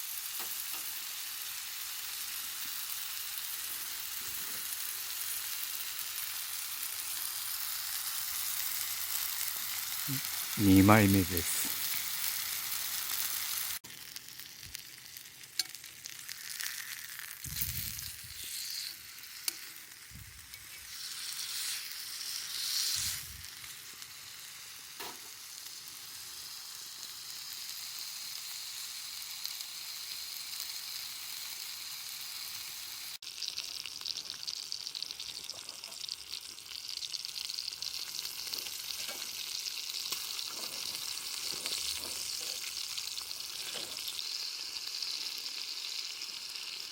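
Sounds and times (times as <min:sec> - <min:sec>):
pork sizzling in oil: 0:00.0 - 0:46.9.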